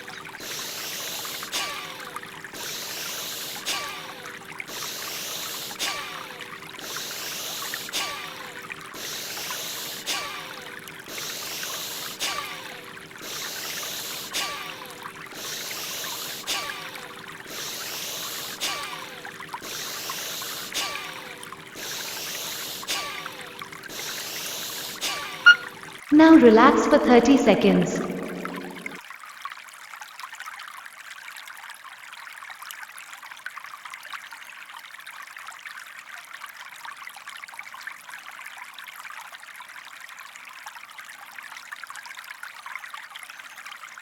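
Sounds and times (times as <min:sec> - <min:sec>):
flowing water: 0:00.0 - 0:44.0
held music tones: 0:25.0 - 0:29.0.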